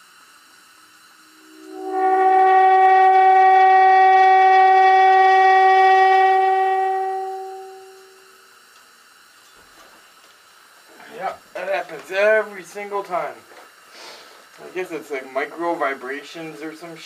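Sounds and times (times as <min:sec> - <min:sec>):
loud humming drone: 0:00.8 - 0:08.5.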